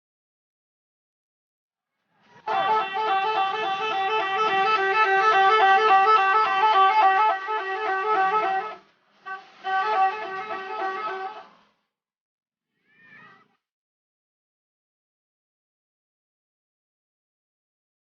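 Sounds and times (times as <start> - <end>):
bus multi-tone horn tune: 2.4 - 11.8.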